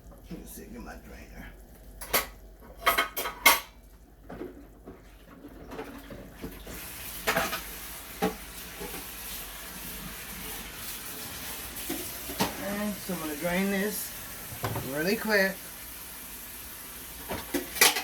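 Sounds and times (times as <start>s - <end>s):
metal kitchenware clanking: 2.0s - 4.5s, 17.3s - 18.0s
chicken sizzling in a pan: 6.4s - 18.0s.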